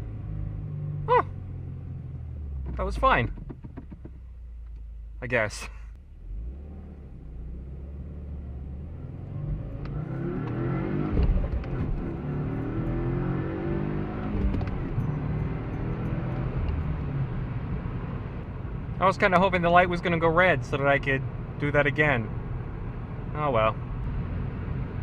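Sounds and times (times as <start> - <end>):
car engine accelerating: 6.0 - 25.0.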